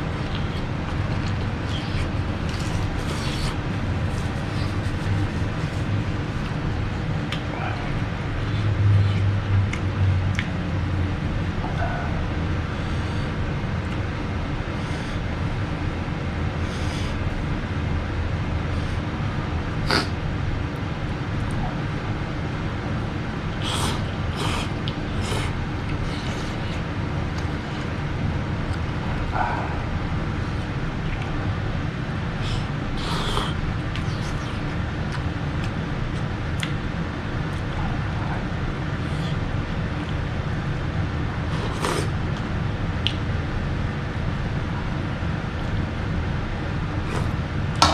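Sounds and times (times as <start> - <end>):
slurping and mouth noises: 0.0 - 10.5, 19.9 - 20.2, 23.5 - 31.4, 32.3 - 36.8, 41.4 - 42.5, 47.0 - 47.4.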